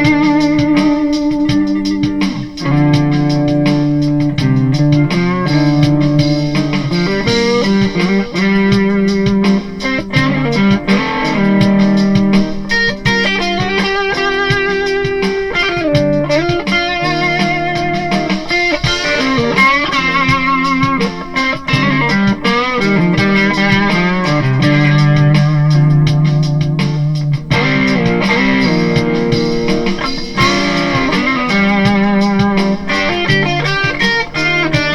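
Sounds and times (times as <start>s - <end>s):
electric guitar melody: 0.0s - 34.9s.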